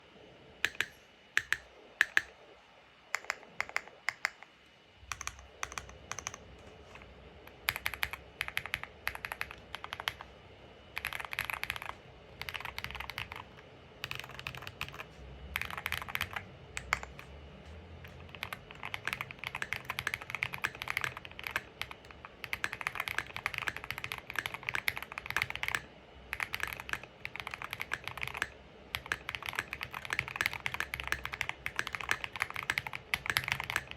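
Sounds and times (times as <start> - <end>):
mechanical keyboard typing: 0.6 - 2.3, 3.2 - 4.5, 5.1 - 6.5, 7.5 - 10.3, 11.0 - 17.3, 18.0 - 33.9.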